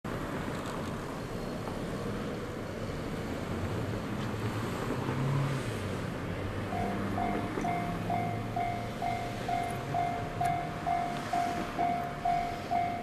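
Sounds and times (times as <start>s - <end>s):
road traffic: 0.0s - 13.0s
vehicle engine running: 6.4s - 13.0s
level-crossing warning bell: 6.7s - 13.0s.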